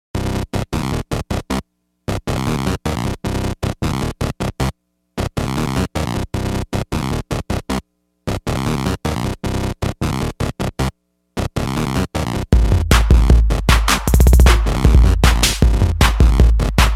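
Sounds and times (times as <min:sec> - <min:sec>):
stuttering electronic music: 0:05.3 - 0:16.9.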